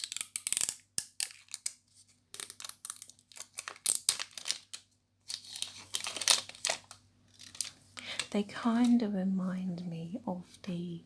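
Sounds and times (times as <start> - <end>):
packet crinkling and tearing: 0.0 - 1.8, 2.4 - 7.8.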